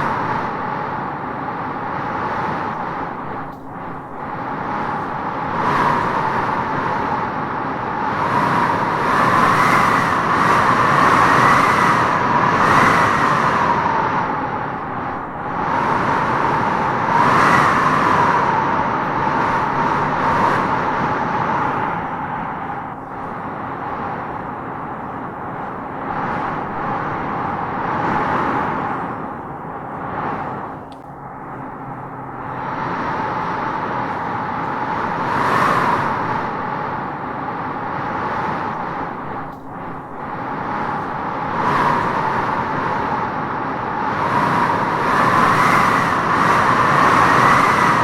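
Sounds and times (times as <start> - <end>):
wind howling through trees: 0.0 - 48.0.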